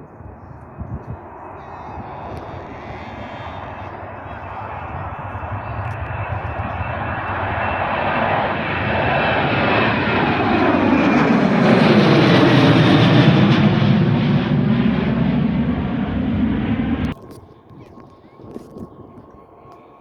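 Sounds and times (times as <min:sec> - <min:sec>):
airliner passing close by: 0:00.0 - 0:20.0
engine whine sweeping down: 0:02.0 - 0:17.1.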